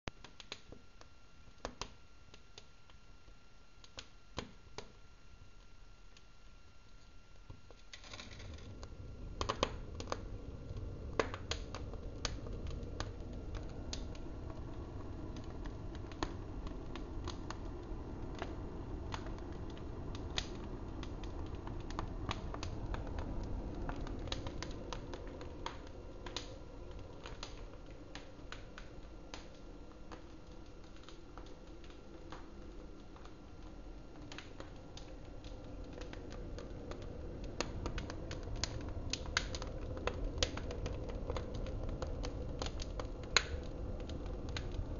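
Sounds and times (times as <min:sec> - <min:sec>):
wood fire crackling and popping: 0:00.1 - 0:44.9
low rush of flame: 0:07.8 - 0:44.9.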